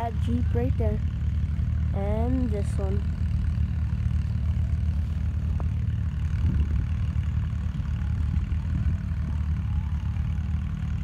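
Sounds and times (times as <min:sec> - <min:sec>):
off-road vehicle engine rumbling: 0:00.0 - 0:11.0.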